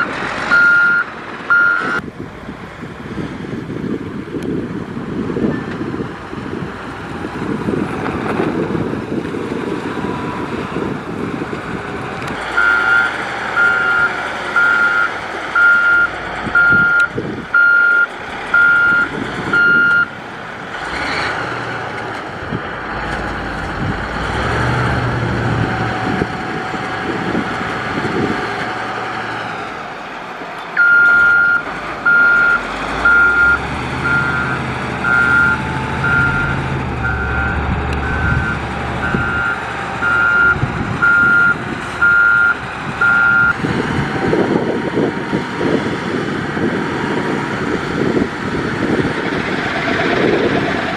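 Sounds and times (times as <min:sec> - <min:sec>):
reversing alarm beeping: 0:00.0 - 0:02.0, 0:12.6 - 0:20.1, 0:30.8 - 0:43.6
diesel engine running: 0:00.0 - 0:50.9.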